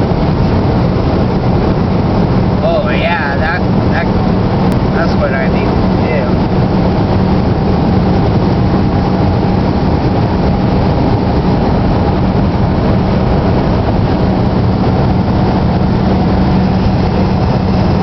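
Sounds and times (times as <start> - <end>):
vehicle driving on highway: 0.0 - 18.0.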